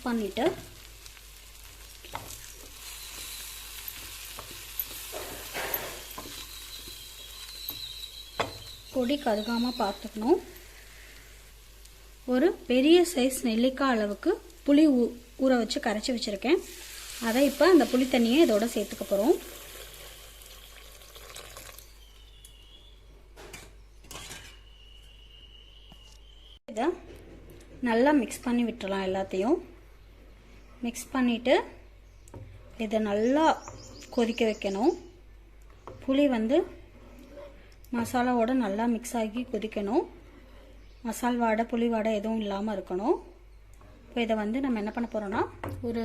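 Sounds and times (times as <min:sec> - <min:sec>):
food frying and sizzling in oil: 0:00.0 - 0:22.6
liquid pouring: 0:18.8 - 0:21.9.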